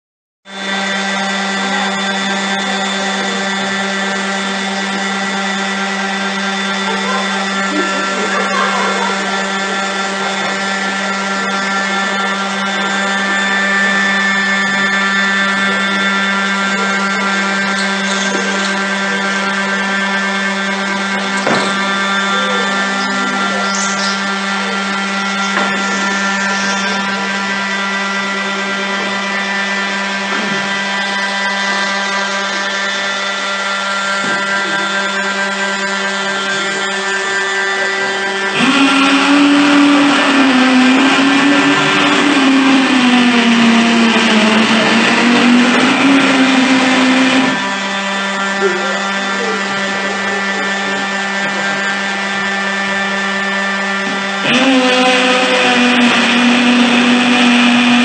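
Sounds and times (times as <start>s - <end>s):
wavering low tone: 6.7s - 52.6s.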